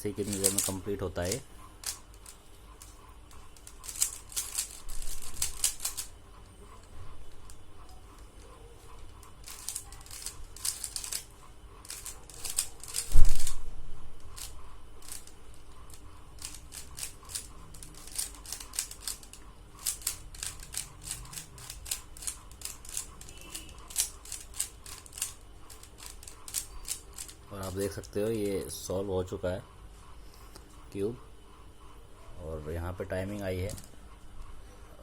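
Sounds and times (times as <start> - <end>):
puzzle cube layers clicking: 1.8 - 6.1, 9.1 - 11.2, 11.9 - 13.3, 15.9 - 28.0.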